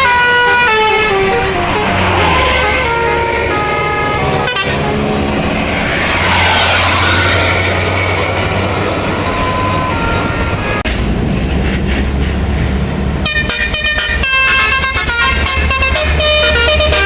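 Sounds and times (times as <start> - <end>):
bus musical horn tune: 0.0 - 10.9, 13.2 - 17.0
bus engine hum: 0.0 - 17.0
rush of noise: 4.1 - 13.2.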